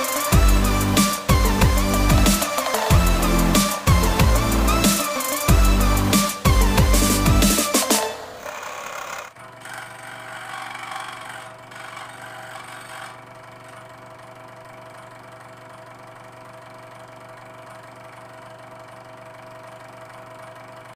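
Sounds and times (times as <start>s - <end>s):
scroll saw running: 0.0s - 15.8s.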